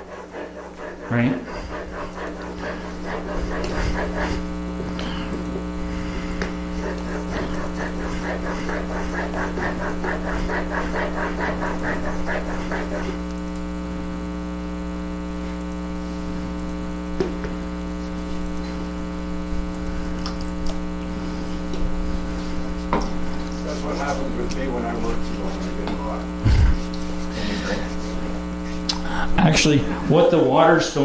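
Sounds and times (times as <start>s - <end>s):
chisel scraping on whetstone: 0.0s - 4.5s, 6.5s - 13.2s
steady electrical hum: 0.0s - 31.0s.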